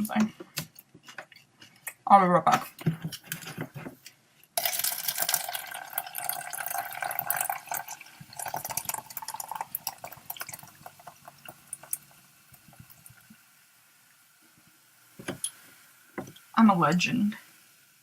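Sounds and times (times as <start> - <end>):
water running from a tap: 4.6 - 13.4.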